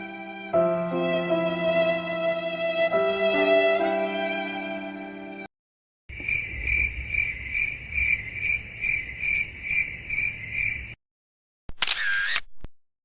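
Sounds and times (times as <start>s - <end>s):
sad violin music: 0.0s - 5.5s
cricket chirping: 6.1s - 11.0s.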